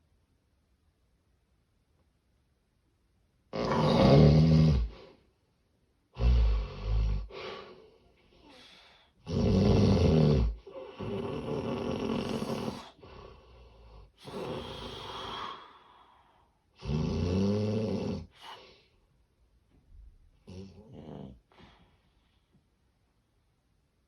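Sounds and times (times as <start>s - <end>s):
loud irregular snoring: 3.5s - 5.0s, 6.2s - 7.4s, 9.2s - 15.6s, 16.8s - 18.4s, 20.5s - 21.4s.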